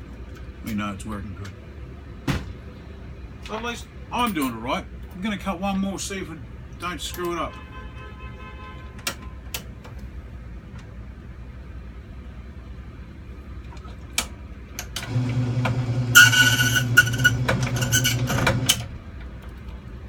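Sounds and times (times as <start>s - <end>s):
cutter grinding key blank: 14.8s - 18.9s
machine motor hum: 15.0s - 18.9s.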